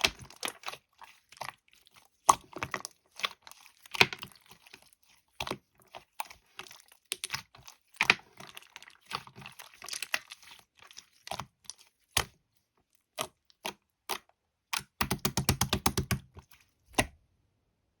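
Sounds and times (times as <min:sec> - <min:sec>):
sharp clicks and taps: 0:14.8 - 0:17.1.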